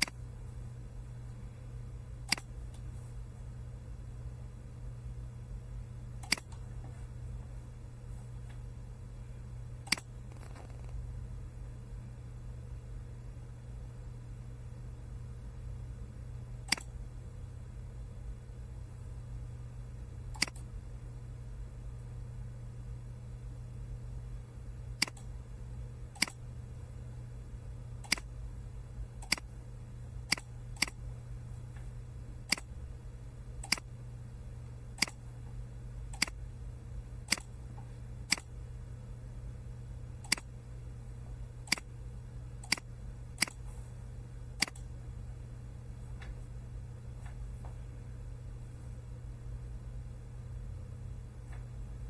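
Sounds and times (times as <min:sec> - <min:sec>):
steady low hum: 0:00.0 - 0:52.0
sharp single clicks: 0:02.3 - 0:02.8, 0:06.2 - 0:06.6, 0:16.7 - 0:16.9, 0:25.0 - 0:25.3, 0:28.0 - 0:28.3, 0:30.3 - 0:31.0, 0:33.6 - 0:33.9, 0:36.1 - 0:36.4, 0:37.3 - 0:37.5, 0:38.3 - 0:38.5, 0:40.2 - 0:40.5, 0:41.7 - 0:41.9, 0:42.6 - 0:43.6.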